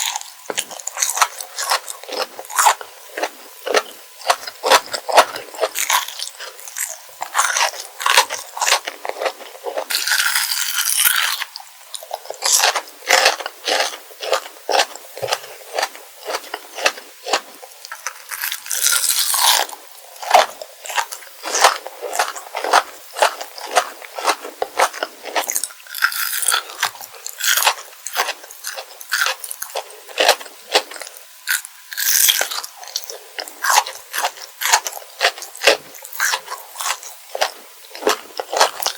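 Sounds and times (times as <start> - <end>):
crunching and chewing candy: 0.0 - 38.9.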